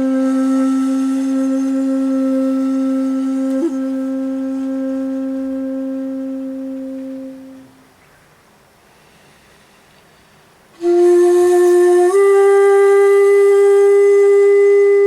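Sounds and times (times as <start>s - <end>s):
bamboo flute long low note: 0.0s - 8.0s, 10.8s - 15.0s
flute finger flick: 3.1s - 4.9s.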